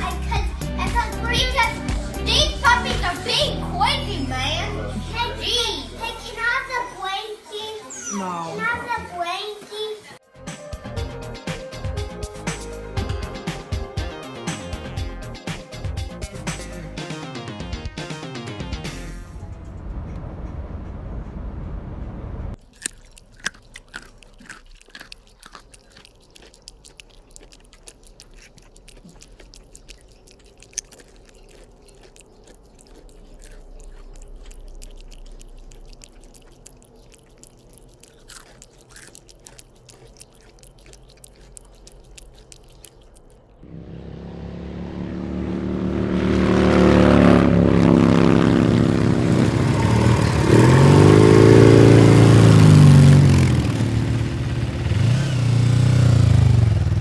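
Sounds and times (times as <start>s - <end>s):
animal crunching and chewing: 22.6s - 43.6s
loud motor noise: 43.6s - 57.0s.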